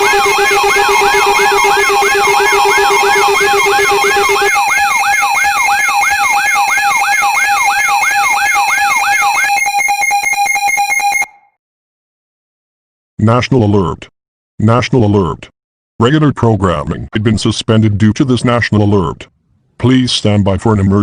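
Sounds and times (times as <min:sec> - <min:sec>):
steady electronic tones: 0:00.0 - 0:11.4
siren-like electronic whoop: 0:00.0 - 0:11.6.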